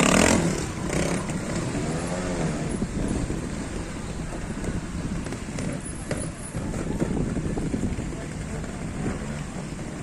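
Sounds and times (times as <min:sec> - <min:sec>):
motorcycle engine revving: 0:00.0 - 0:04.0.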